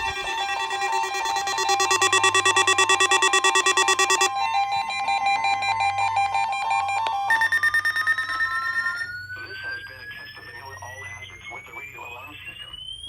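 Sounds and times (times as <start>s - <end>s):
pulsing two-pitch beep: 0.0s - 4.5s, 5.4s - 13.0s
rising electronic tone: 0.0s - 9.6s
steady high alarm tone: 0.0s - 13.0s.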